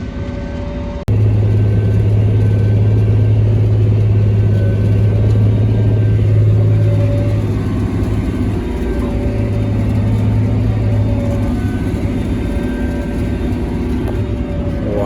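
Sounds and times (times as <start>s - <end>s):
tractor engine running: 1.0s - 15.0s.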